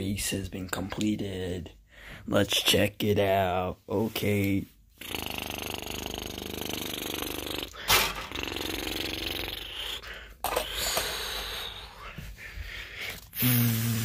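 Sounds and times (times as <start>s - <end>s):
person breathing: 1.8s - 2.3s, 7.7s - 8.3s, 9.6s - 14.0s
raspy buzzing throat noise: 5.0s - 10.4s, 13.4s - 14.0s.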